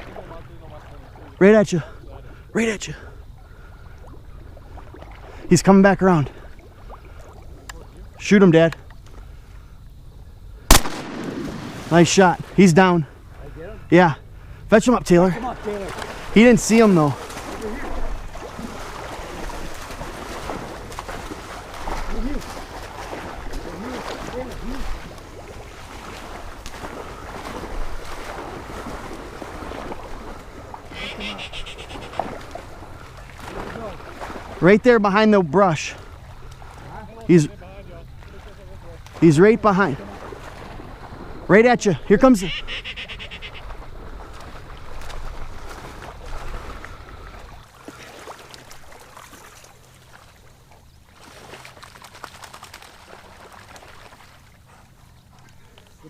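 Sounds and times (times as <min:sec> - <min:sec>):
dog splashing through marsh water: 0:00.0 - 0:02.1, 0:10.7 - 0:13.7, 0:14.9 - 0:42.5, 0:43.1 - 0:56.0
faint ticks: 0:08.6 - 0:09.6, 0:55.3 - 0:56.0
wind buffeting microphone: 0:08.9 - 0:30.9, 0:43.6 - 0:47.6
reeds crackling: 0:10.7 - 0:12.6.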